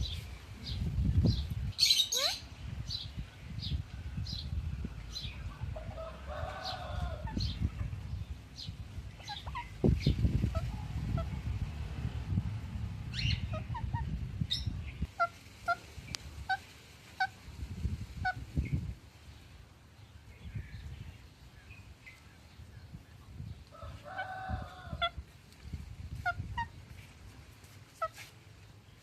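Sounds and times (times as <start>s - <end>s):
parrot chirping: 1.8s - 2.4s.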